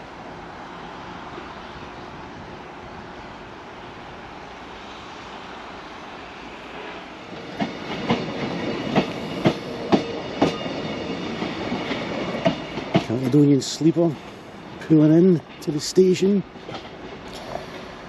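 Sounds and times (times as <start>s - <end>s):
train rumble: 0.0s - 18.0s
train wheels clacking over rail joints: 7.3s - 18.0s.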